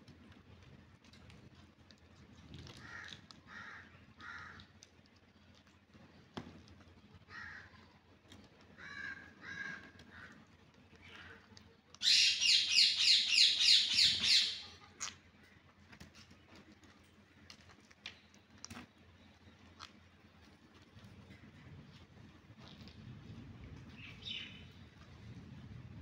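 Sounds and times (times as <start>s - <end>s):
parrot screeching: 12.0s - 14.7s.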